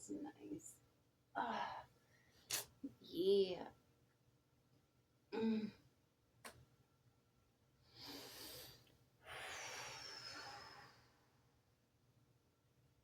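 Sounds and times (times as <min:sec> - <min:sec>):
woman breathing deeply: 0:07.9 - 0:11.4.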